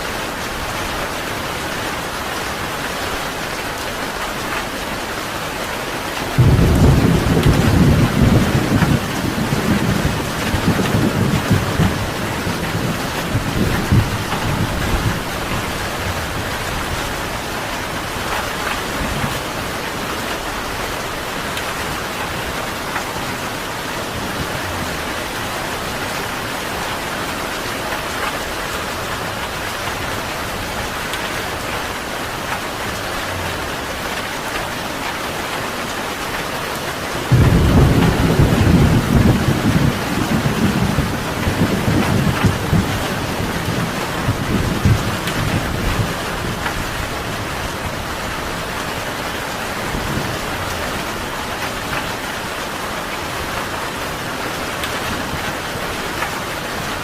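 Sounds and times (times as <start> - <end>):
heavy rain: 0.0 - 57.0
thunder rumbling: 6.3 - 26.7, 37.2 - 49.1.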